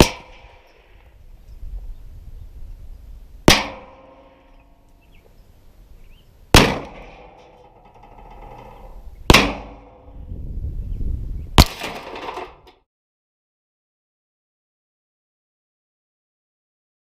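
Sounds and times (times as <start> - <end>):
revolver shots with echo: 6.6 - 7.3.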